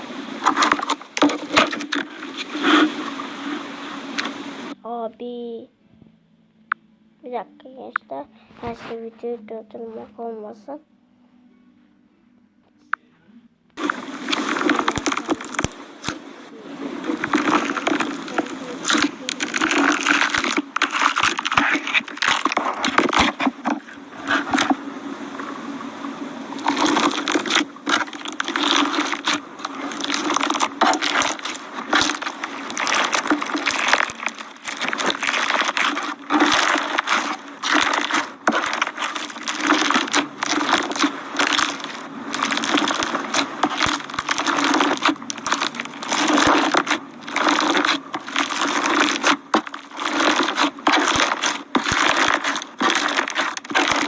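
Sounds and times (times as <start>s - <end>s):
slime crunching and popping: 13.8s - 16.2s, 17.1s - 24.8s, 26.6s - 54.0s.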